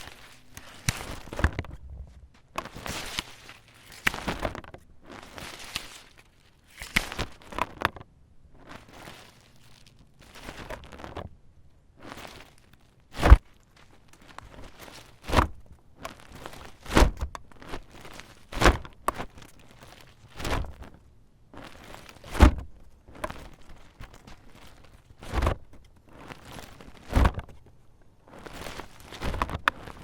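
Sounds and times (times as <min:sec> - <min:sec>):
umbrella snapping open: 0:00.0 - 0:01.8, 0:02.5 - 0:08.0, 0:12.1 - 0:21.0, 0:21.6 - 0:25.6, 0:26.2 - 0:27.6, 0:28.3 - 0:30.0
umbrella fabric rustling: 0:00.0 - 0:08.0, 0:08.6 - 0:11.3, 0:12.0 - 0:30.0.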